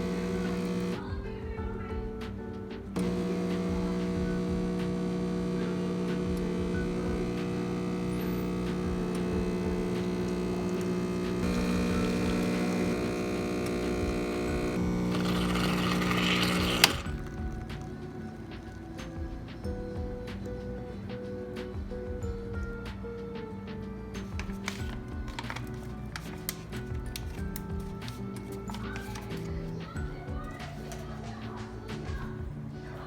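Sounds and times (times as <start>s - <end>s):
espresso machine hiss: 0.0s - 1.0s, 3.0s - 17.5s
espresso machine humming: 0.0s - 1.0s, 3.0s - 18.8s.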